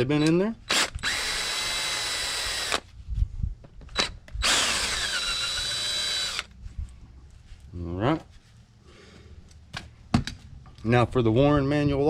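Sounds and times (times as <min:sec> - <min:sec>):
power drill spinning: 0:00.2 - 0:02.9, 0:03.9 - 0:06.6.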